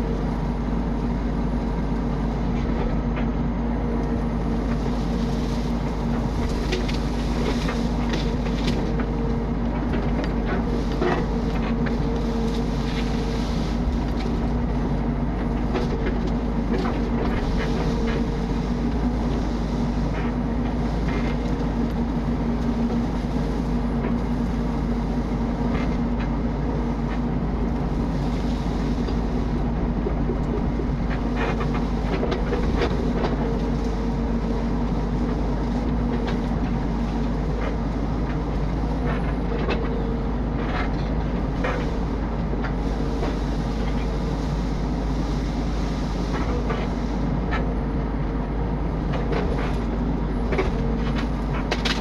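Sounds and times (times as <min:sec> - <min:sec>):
excavator diesel engine running: 0:00.0 - 0:52.0
machine knocks and clatter: 0:05.2 - 0:24.7, 0:49.0 - 0:52.0.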